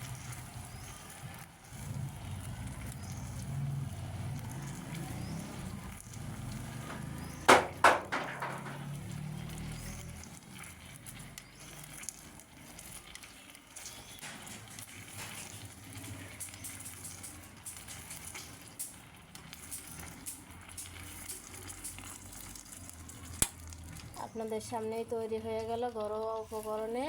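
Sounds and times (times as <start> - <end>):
liquid sizzling and crackling: 0.0 - 27.0.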